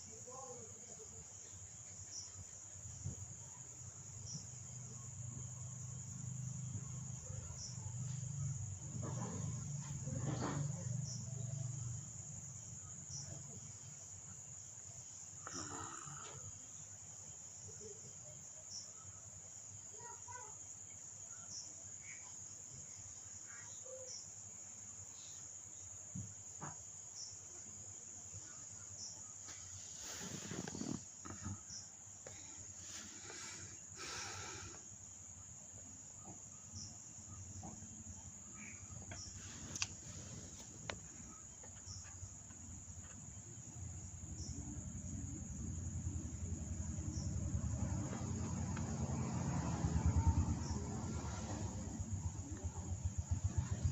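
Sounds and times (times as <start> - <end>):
insects trilling: 0.0 - 53.9
rustling: 29.4 - 34.6, 39.0 - 42.2.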